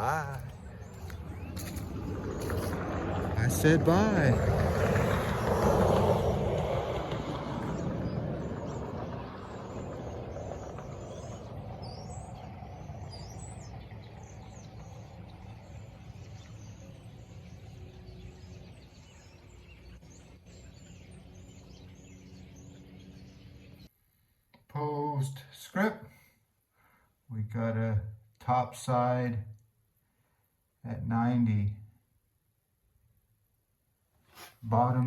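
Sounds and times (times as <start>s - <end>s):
highway traffic rumble: 0.0s - 24.0s
small birds chirping: 0.0s - 25.5s.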